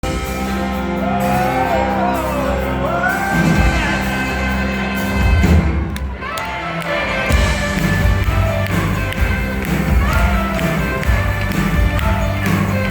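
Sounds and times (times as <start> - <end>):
live band music: 0.0 - 12.9
person singing: 0.6 - 12.9.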